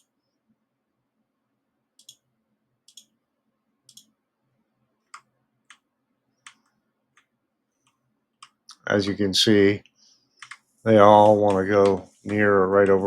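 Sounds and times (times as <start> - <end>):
computer mouse clicks: 2.0 - 2.2, 2.9 - 3.2, 3.9 - 4.1, 5.1 - 8.6, 10.4 - 10.7.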